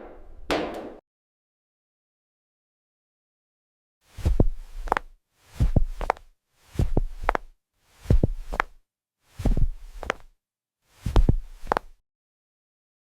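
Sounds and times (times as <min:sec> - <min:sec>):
high-heel footsteps: 0:04.2 - 0:08.8, 0:09.4 - 0:10.3, 0:11.0 - 0:12.0.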